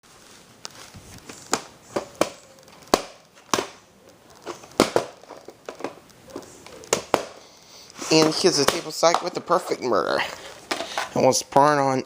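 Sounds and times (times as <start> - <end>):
plastic shrink-wrap crackling: 0.1 - 3.4.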